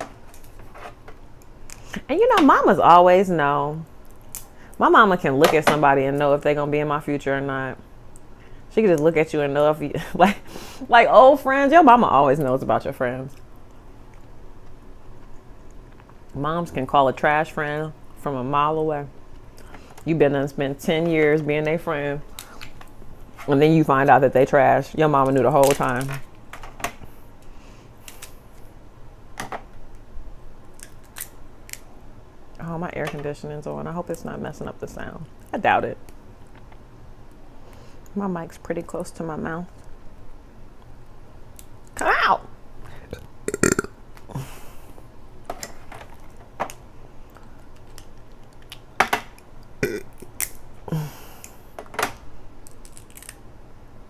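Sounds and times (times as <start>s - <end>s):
faint background hum: 0.0s - 54.0s
crab shell cracking: 30.7s - 31.9s, 52.6s - 53.4s.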